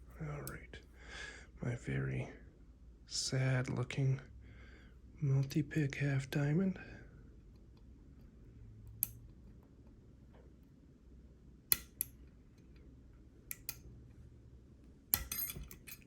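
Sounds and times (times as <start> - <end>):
lock pick clicking: 11.7 - 12.7, 13.5 - 13.8, 15.1 - 16.0.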